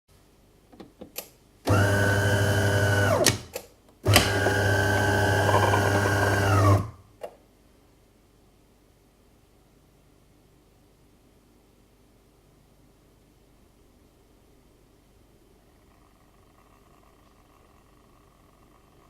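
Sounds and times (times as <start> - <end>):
coffee machine humming: 1.7 - 3.2, 4.1 - 7.0.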